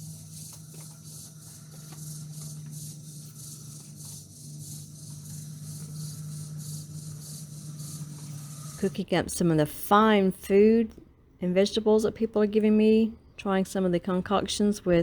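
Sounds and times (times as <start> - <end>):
insects pulsing buzz: 0.0 - 9.1
steady low hum: 0.0 - 15.0.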